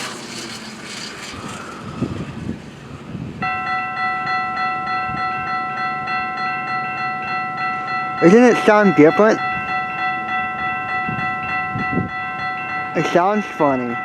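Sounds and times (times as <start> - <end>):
train rumbling past: 0.0 - 14.0
railroad crossing bell ringing: 3.2 - 14.0.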